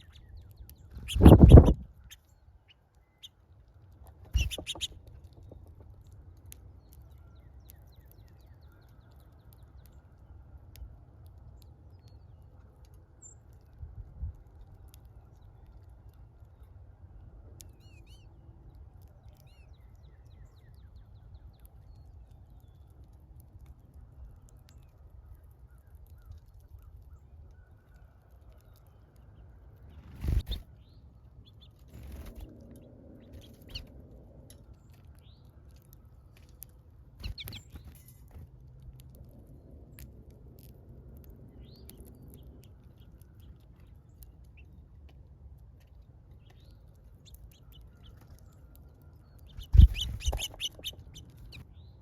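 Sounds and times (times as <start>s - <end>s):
steady low rumble: 0.0s - 2.1s, 4.2s - 6.8s, 29.7s - 48.0s, 49.2s - 52.0s
small birds chirping: 0.0s - 16.8s, 17.5s - 39.0s, 39.9s - 45.0s, 45.8s - 52.0s.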